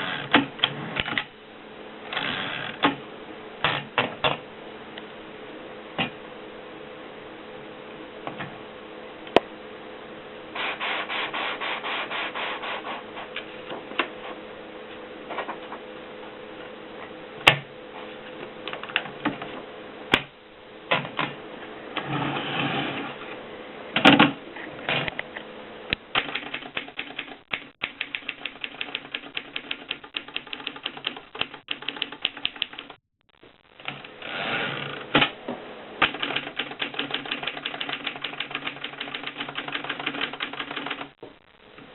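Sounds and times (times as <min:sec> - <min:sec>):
typewriter keys clacking: 0:26.2 - 0:33.0, 0:36.0 - 0:41.2.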